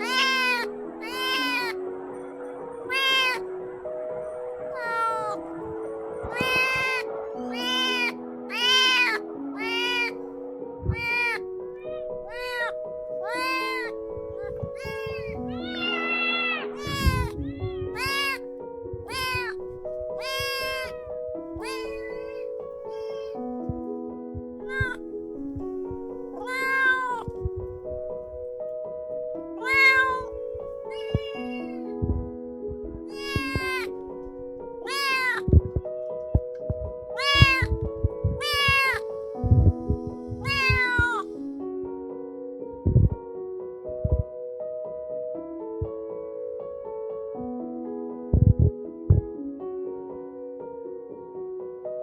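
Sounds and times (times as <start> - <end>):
kitten meowing: 0.0 - 1.8, 2.8 - 3.5, 4.6 - 5.6, 6.2 - 10.2, 10.8 - 23.4, 24.6 - 25.1, 26.3 - 28.3, 29.6 - 32.2, 33.1 - 34.0, 34.7 - 41.3
background music: 0.0 - 52.0.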